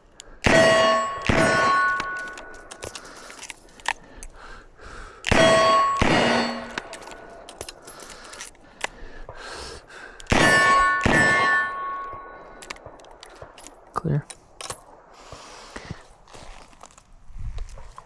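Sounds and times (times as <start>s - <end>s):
reload clicks: 0.0s - 16.6s
steel target ringing clang: 0.4s - 2.6s, 5.3s - 7.3s, 10.3s - 12.5s.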